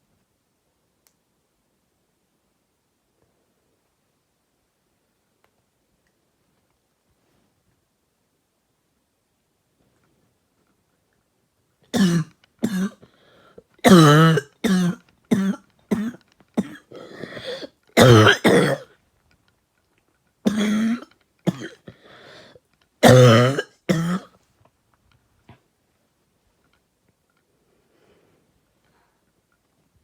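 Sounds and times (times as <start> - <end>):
person coughing: 12.0 - 13.0, 13.8 - 18.9, 20.5 - 22.0, 23.0 - 24.3
faint breaths: 13.0 - 13.8, 16.9 - 17.8, 21.8 - 22.8, 27.4 - 29.6.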